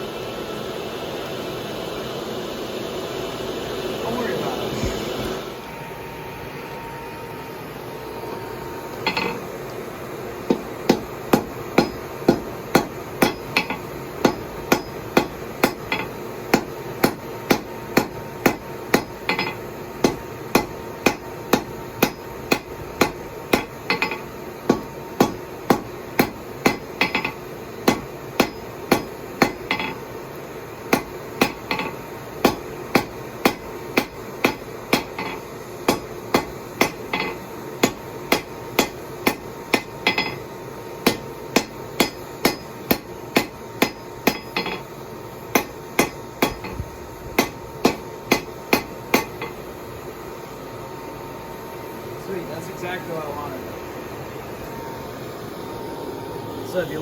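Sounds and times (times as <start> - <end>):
hammer striking steel on anvil: 8.9 - 9.5, 10.5 - 30.2, 30.9 - 49.6.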